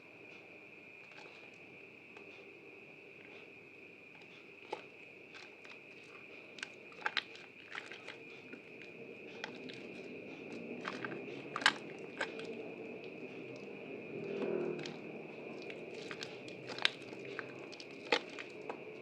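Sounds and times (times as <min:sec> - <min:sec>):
wet soap clicks and crackles: 0:04.1 - 0:19.0.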